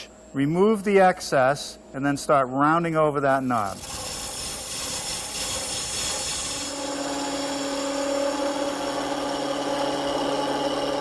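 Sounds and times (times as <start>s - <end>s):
gouge cutting wood hiss: 3.6s - 7.1s
wood lathe humming: 3.7s - 11.0s.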